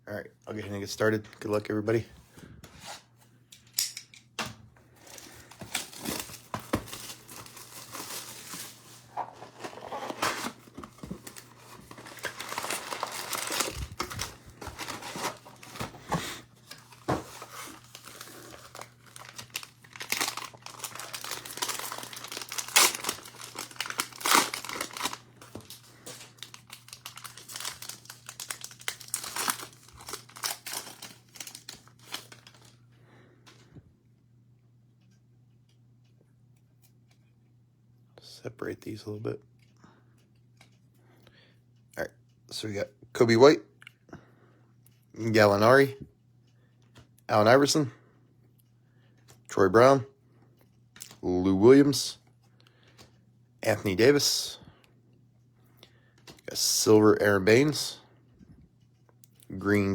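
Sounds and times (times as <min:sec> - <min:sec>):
cellophane wrappers tearing and crinkling: 0:05.0 - 0:32.7.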